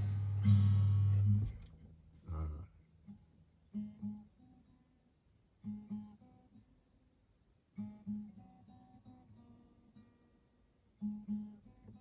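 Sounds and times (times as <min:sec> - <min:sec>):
acoustic guitar strumming: 0:00.0 - 0:01.7, 0:03.0 - 0:04.8, 0:07.8 - 0:10.4, 0:11.0 - 0:12.0.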